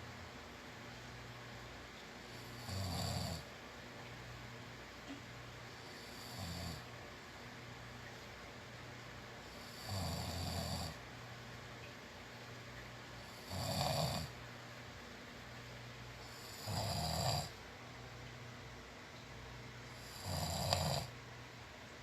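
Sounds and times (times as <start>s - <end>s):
person snoring: 2.3s - 3.4s, 5.9s - 6.8s, 9.6s - 11.0s, 13.3s - 14.3s, 16.2s - 17.6s, 19.9s - 21.1s.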